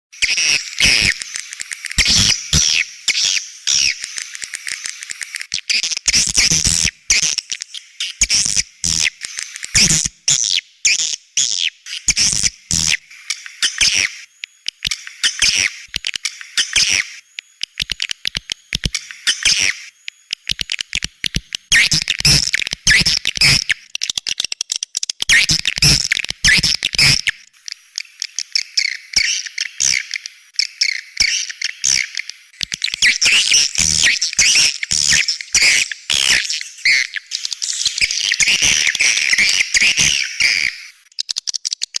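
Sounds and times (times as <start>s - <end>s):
sharp clicks: 0.8s - 2.8s, 4.0s - 6.4s, 14.4s - 35.7s.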